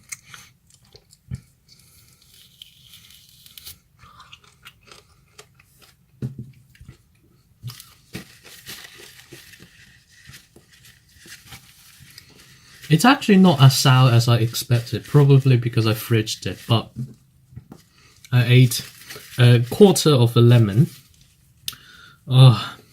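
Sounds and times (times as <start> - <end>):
person chewing wetly: 0.0 - 9.2
small clicks and crunches: 4.4 - 12.5.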